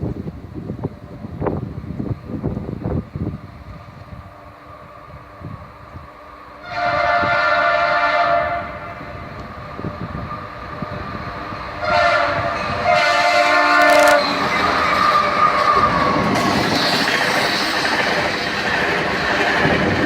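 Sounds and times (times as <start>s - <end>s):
low rumble of train: 0.0s - 20.0s
locomotive air horn: 6.6s - 9.1s, 11.8s - 16.1s.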